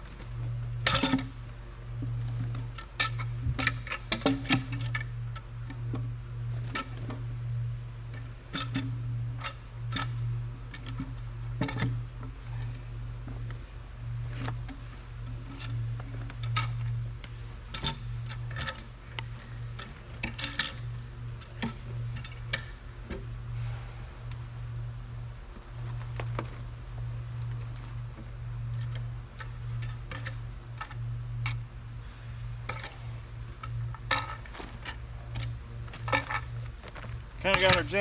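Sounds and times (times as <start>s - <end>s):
tractor diesel engine running: 32.0s - 38.0s.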